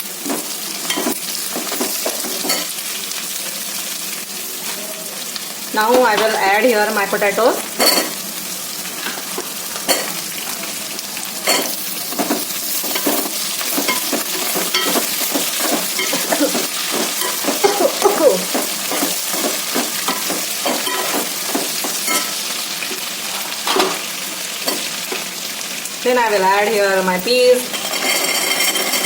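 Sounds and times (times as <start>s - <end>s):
vegetables sizzling in hot oil: 0.0s - 29.0s
spoon scraping and tapping pan: 0.2s - 2.7s, 11.4s - 22.4s, 27.7s - 29.0s.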